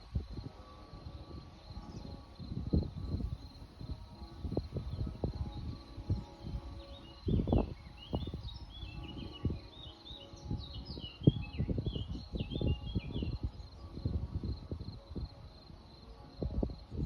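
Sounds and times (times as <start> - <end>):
insect trill: 0.0 - 17.0
songbirds chirping: 0.0 - 17.0
wind buffeting microphone: 0.0 - 17.0.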